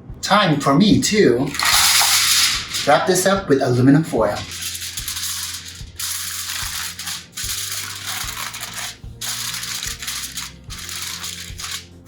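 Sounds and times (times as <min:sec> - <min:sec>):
aluminum foil crinkling: 0:01.5 - 0:03.2, 0:04.2 - 0:12.0.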